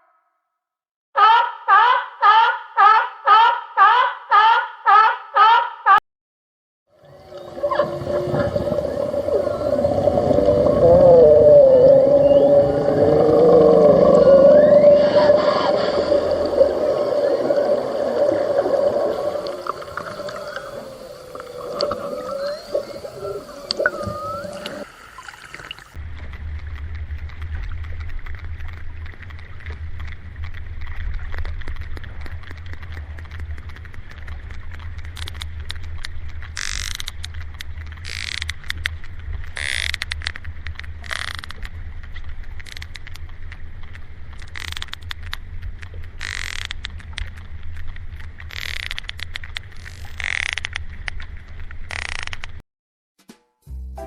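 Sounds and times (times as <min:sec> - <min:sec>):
wavering gliding marine mammal calls: 0:07.0 - 0:25.9
steady low rumble: 0:25.9 - 0:46.2.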